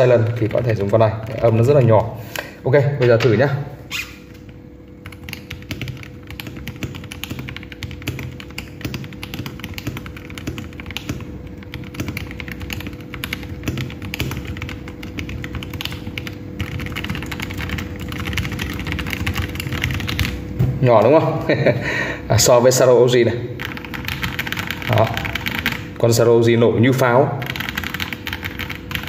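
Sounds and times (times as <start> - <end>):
mechanical keyboard typing: 5.0 - 20.4, 23.6 - 25.9, 27.4 - 29.0.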